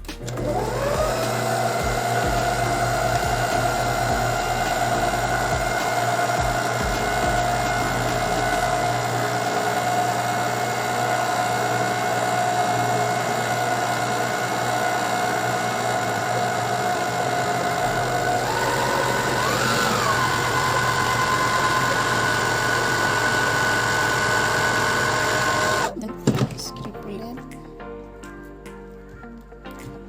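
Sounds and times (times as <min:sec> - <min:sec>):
electric stand mixer running: 0:00.0 - 0:25.9.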